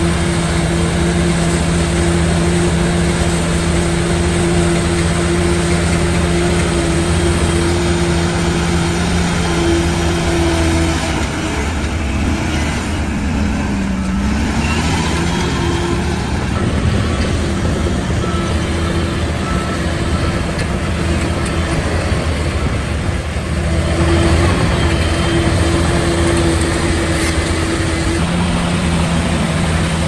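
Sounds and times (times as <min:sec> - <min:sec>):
heavy diesel engine running: 0:00.0 - 0:30.0.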